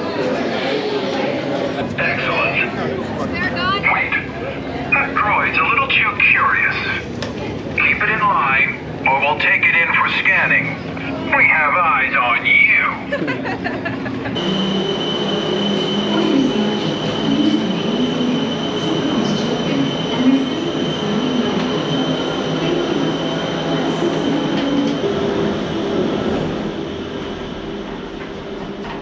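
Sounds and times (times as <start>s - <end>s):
machinery high whine: 14.0s - 29.0s
gondola wheels squealing: 14.1s - 27.1s.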